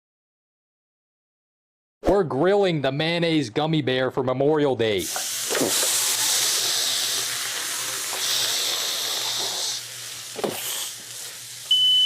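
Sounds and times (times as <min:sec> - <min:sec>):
food sizzling on a hot grill: 0:05.0 - 0:12.0.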